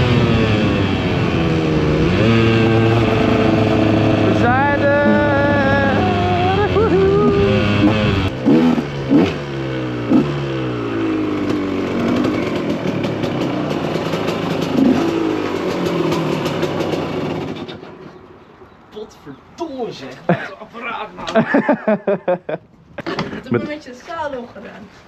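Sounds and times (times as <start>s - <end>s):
two-stroke engine revving: 0.0s - 18.1s
engine popping: 0.0s - 18.2s.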